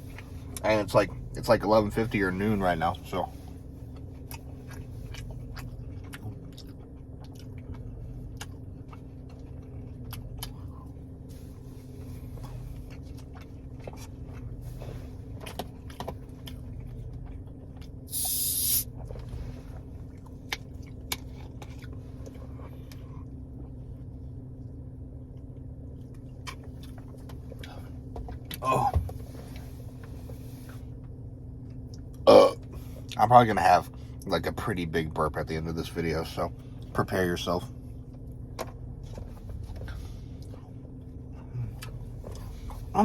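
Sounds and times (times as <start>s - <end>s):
chewing and crunching fried chicken: 0.0s - 34.7s, 35.8s - 43.0s
steady low hum: 0.0s - 43.0s
short loud hiss: 18.1s - 18.8s.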